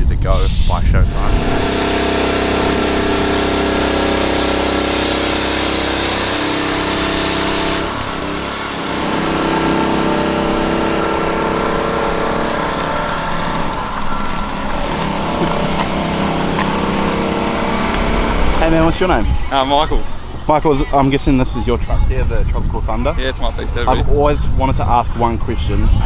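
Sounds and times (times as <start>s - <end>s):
vehicle engine running: 0.7s - 25.6s.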